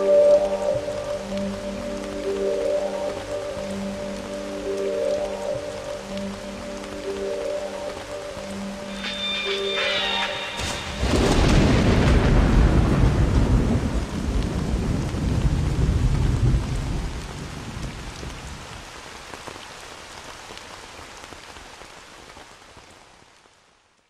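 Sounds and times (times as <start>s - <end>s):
rain falling: 0.0s - 24.0s
thunder rumbling: 8.9s - 18.6s.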